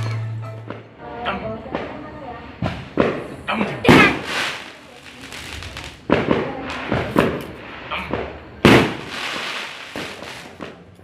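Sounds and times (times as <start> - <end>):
fireworks bangs and crackle: 0.6 - 11.0.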